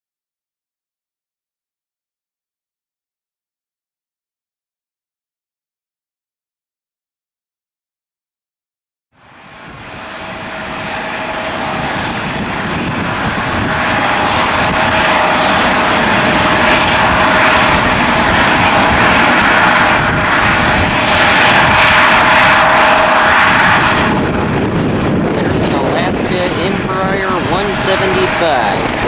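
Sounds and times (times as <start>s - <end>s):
airliner engines running: 9.2s - 29.0s.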